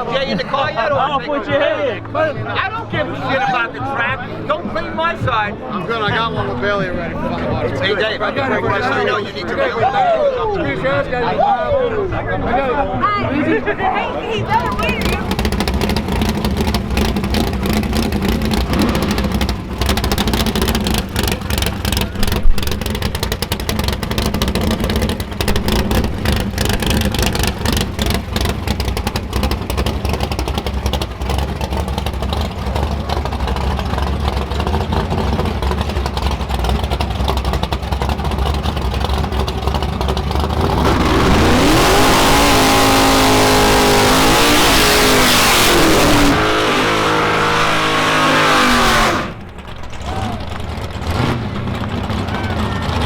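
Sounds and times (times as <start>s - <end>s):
drag race car engines revving: 2.2s - 9.8s, 13.6s - 53.0s.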